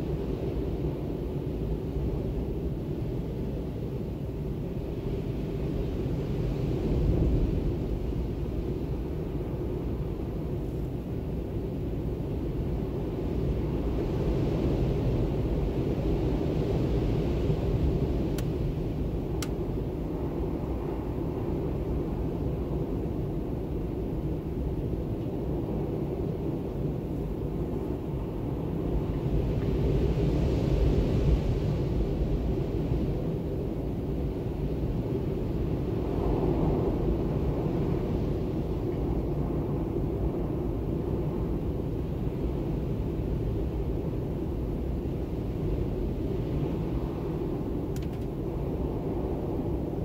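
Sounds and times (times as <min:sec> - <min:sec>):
howling storm wind: 0:00.0 - 0:50.0.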